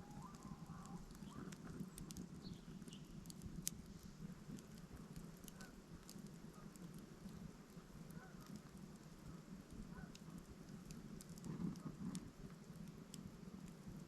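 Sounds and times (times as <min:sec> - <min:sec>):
sharp crackles and ticks: 0:00.0 - 0:14.0
faint bird chirps: 0:02.4 - 0:03.2.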